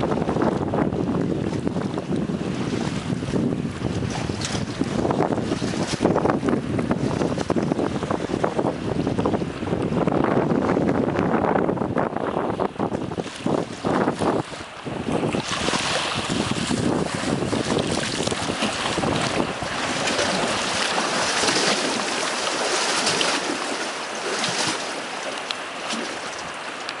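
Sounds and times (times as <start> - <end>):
waves washing on a lake: 0.0 - 27.0
wind buffeting microphone: 0.0 - 27.0.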